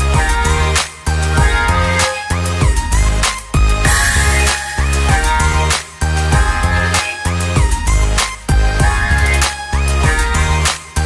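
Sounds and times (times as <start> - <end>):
heavy bass beat: 0.0 - 11.0
pop r and b instrumental music: 0.0 - 11.0
sharp drum hits: 3.9 - 4.4.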